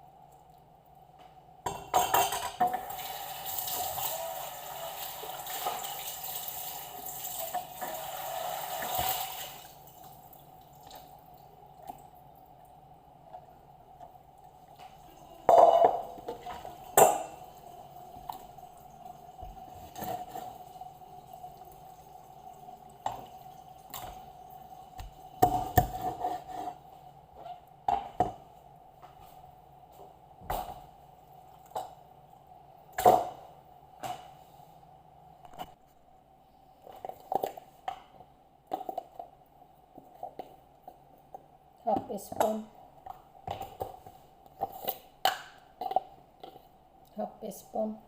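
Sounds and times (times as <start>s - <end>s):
dishes and utensils clattering: 1.7s - 3.0s, 14.8s - 26.8s
water dripping: 2.8s - 15.0s, 16.1s - 25.5s.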